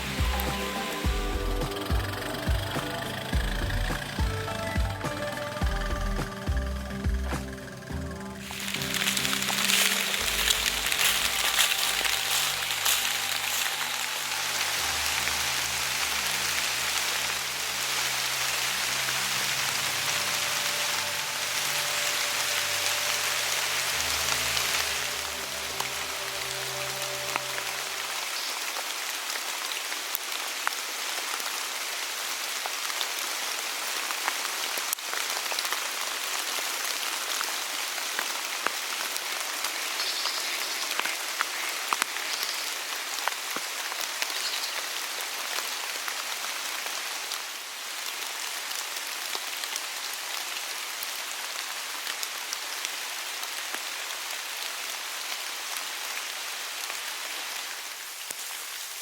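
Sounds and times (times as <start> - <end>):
raindrops ticking: 0.0 - 29.0
rain pattering: 0.0 - 59.0.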